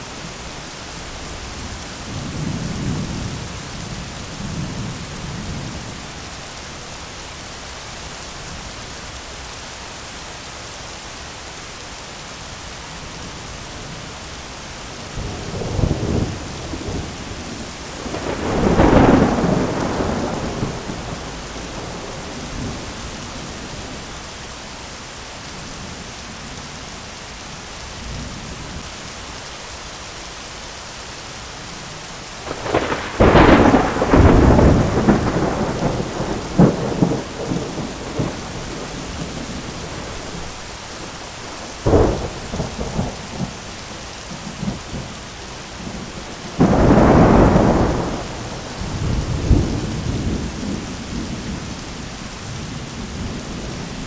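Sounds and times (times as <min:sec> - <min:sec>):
heavy rain: 0:00.0 - 0:54.0
crackling thunderclap: 0:15.1 - 0:24.0, 0:32.4 - 0:43.7, 0:44.3 - 0:45.1, 0:45.7 - 0:54.0
thunder rumbling: 0:15.1 - 0:24.1, 0:32.4 - 0:43.7, 0:44.3 - 0:54.0.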